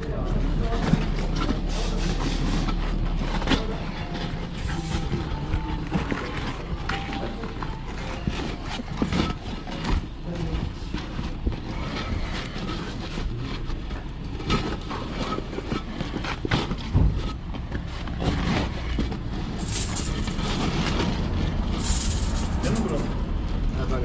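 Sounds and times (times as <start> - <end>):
hand tools knocking and clanking: 19.2 - 23.2.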